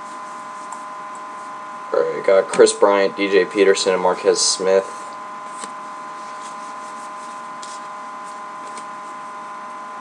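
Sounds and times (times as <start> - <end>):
electrical hum: 0.0 - 10.0
cards swishing: 5.5 - 9.1.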